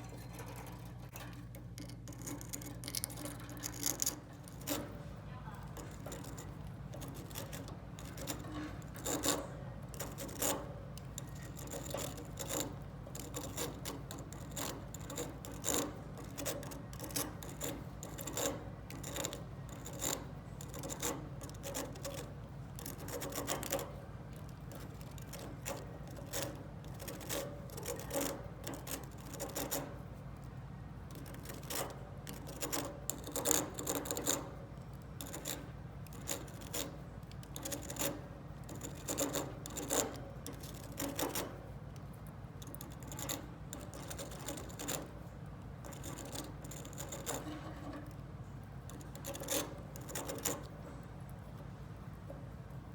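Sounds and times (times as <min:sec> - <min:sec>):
steady low hum: 0:00.0 - 0:52.9.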